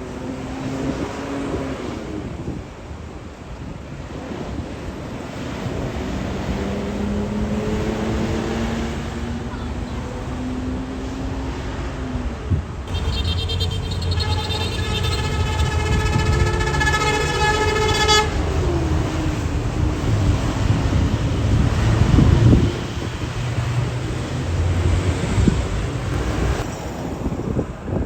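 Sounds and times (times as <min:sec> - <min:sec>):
bus engine rumble: 0:00.0 - 0:28.0
multi-tone bus horn blast: 0:12.9 - 0:21.0.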